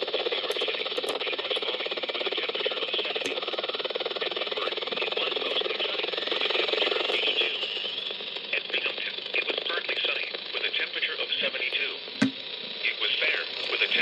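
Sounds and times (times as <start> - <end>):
radio static hiss: 0.5 - 14.0
faint broadcast voice: 8.5 - 14.0.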